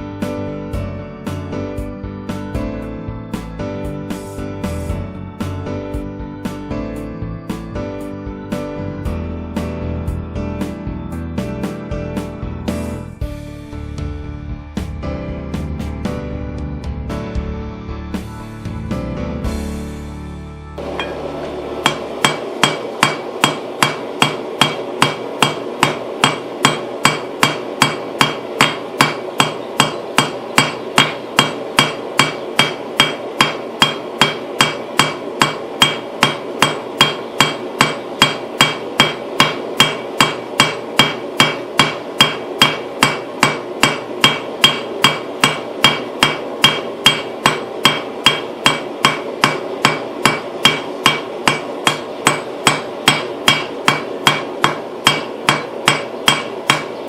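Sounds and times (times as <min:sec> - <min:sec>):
hammer striking metal on anvil: 0:20.8 - 0:57.0.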